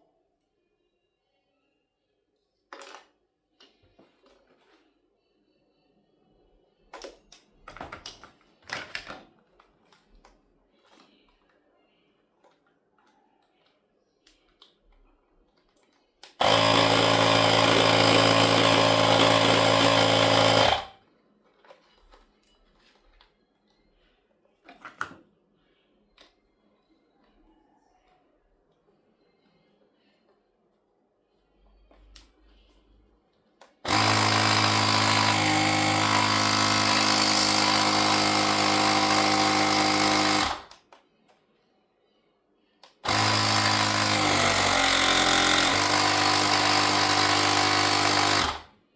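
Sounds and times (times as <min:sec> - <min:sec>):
electric air pump buzzing: 0:16.4 - 0:21.0, 0:33.9 - 0:40.7, 0:43.0 - 0:48.7.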